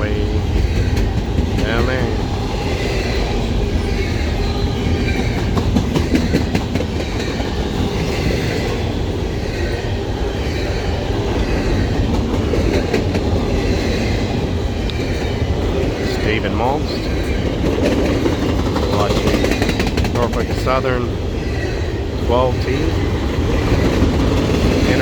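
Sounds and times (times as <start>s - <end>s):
rail clicks: 0.0s - 25.0s
train wheels rumbling on rail: 0.0s - 25.0s.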